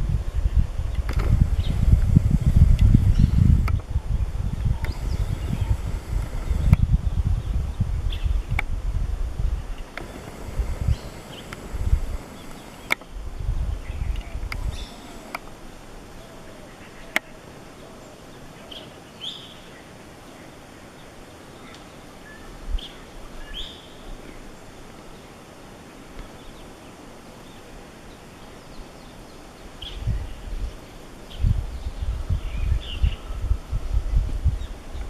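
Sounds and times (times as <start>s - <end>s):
low thumps on microphone: 0.0s - 8.8s
outdoor background hiss: 0.0s - 35.0s
bird chirps: 10.0s - 13.1s, 13.8s - 15.5s.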